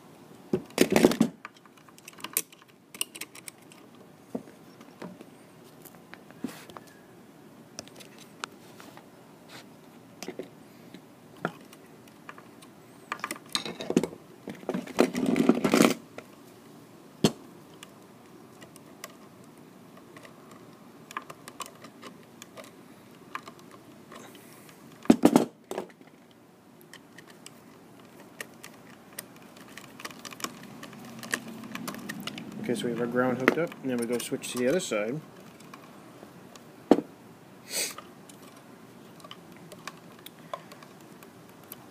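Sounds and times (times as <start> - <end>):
handling noise: 17.2 - 37.2.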